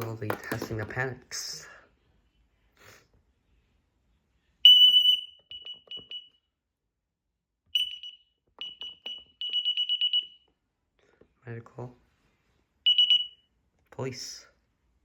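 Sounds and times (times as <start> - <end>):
alarm panel high-pitched beeps: 4.7 - 6.4, 7.8 - 10.4, 12.9 - 13.4.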